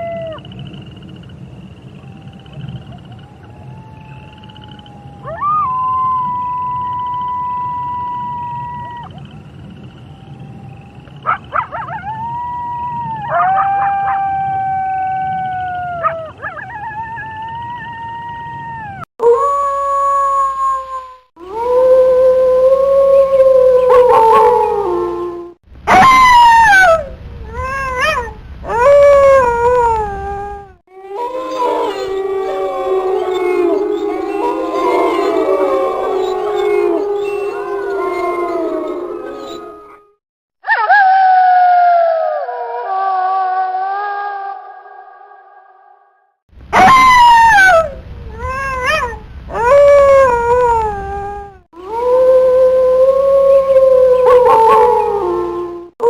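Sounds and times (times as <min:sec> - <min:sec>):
wolves howling in chorus: 0:21.5 - 0:27.0, 0:31.0 - 0:44.6, 0:48.5 - 0:56.0
wolves yipping: 0:46.8 - 0:50.9.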